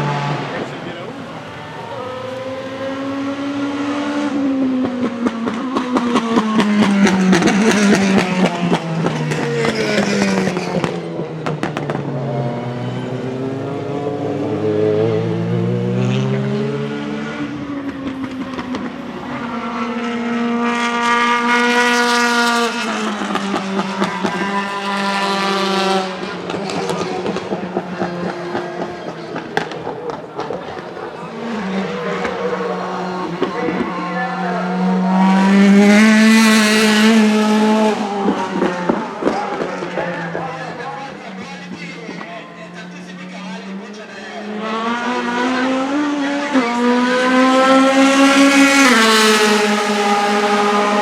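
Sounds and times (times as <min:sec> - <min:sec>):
race car engine revving: 0:00.0 - 0:51.0
exhaust crackling: 0:15.3 - 0:24.4.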